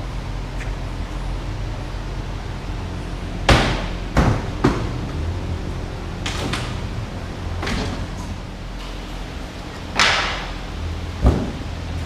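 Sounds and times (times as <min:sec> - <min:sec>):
steady low hum: 0:00.0 - 0:12.0
knocks on wooden crate: 0:11.2 - 0:11.6.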